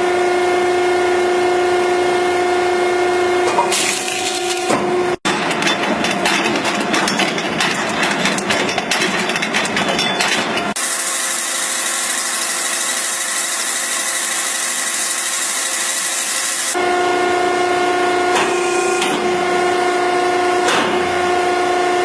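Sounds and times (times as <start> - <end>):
air compressor whine: 10.6 - 22.0.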